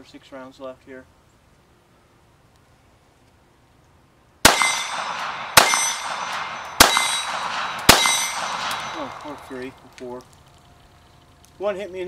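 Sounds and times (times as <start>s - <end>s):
pistol shots with ringing tail: 4.4s - 9.8s.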